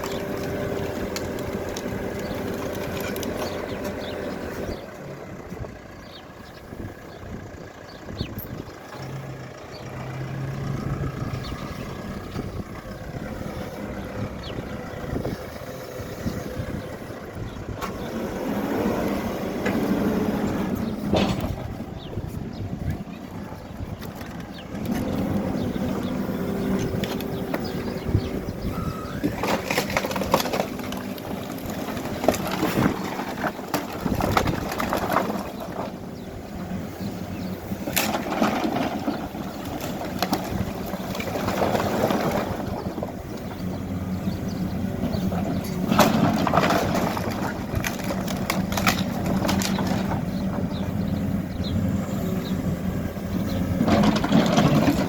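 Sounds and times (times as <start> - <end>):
rubble cracking and clattering: 0.0 - 4.2, 29.1 - 36.0, 37.8 - 43.5, 45.2 - 50.8, 53.7 - 55.0
diesel engine surging: 0.0 - 55.0.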